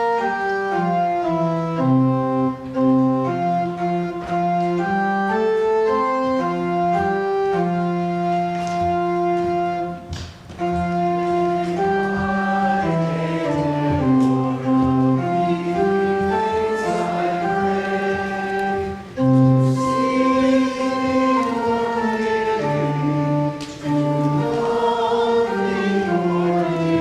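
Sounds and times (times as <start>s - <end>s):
organ: 0.0s - 27.0s
choir singing: 11.4s - 27.0s.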